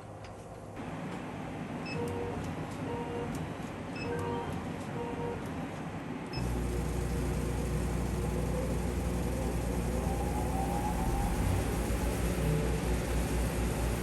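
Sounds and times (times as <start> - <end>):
machine humming and hissing: 6.3 - 14.0.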